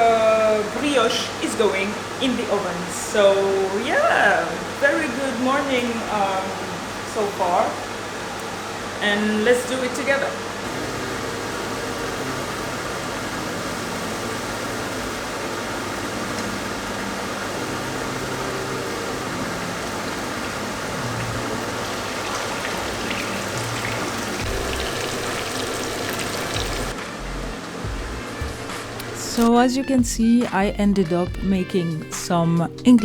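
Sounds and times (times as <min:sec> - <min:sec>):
chicken sizzling in a pan: 0:21.2 - 0:26.9.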